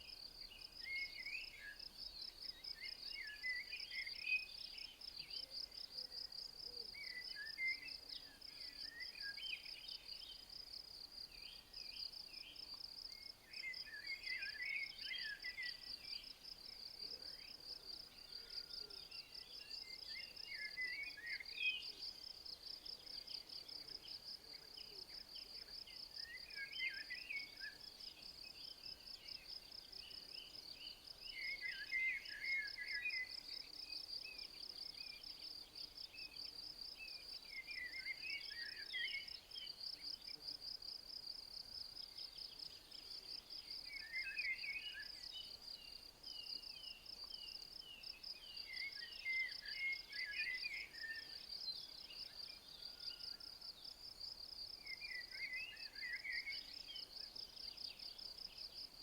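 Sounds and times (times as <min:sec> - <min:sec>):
songbird singing: 0:00.0 - 0:59.0.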